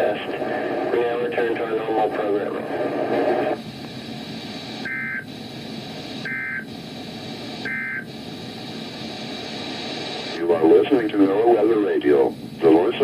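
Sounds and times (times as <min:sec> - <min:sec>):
radio hiss: 0:00.0 - 0:13.0
two-tone digital data warble: 0:04.8 - 0:05.2.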